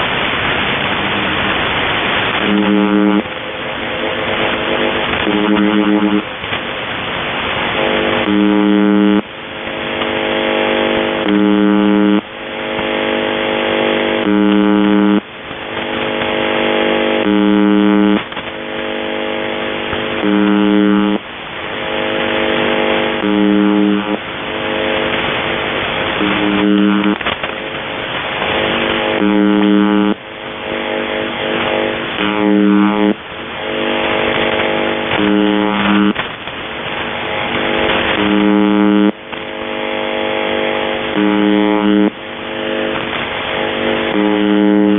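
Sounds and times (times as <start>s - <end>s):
radio buzz tone: 0.0s - 44.9s
radio static: 0.0s - 44.9s
sliding interference whistles: 4.7s - 6.2s, 26.2s - 27.2s, 37.6s - 39.2s.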